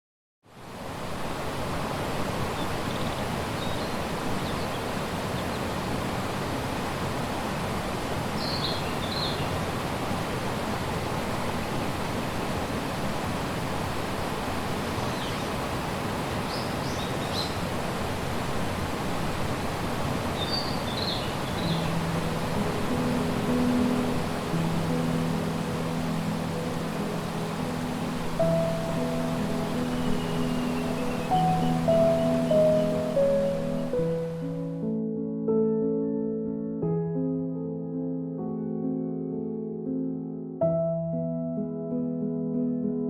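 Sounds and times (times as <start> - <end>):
stream water rushing: 0.5 - 34.7
bird chirping: 8.4 - 9.5, 20.4 - 22.0, 28.4 - 34.2.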